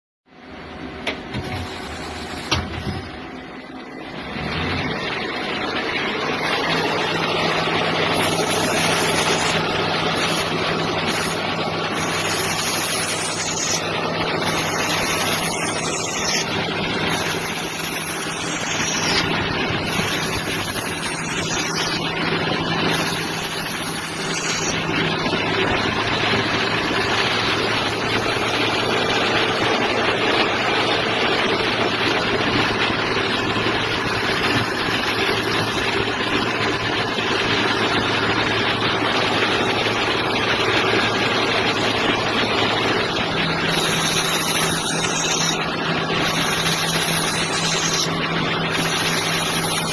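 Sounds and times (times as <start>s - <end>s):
lathe machine drone: 0.3s - 49.9s
short high falling whines: 1.4s - 7.3s.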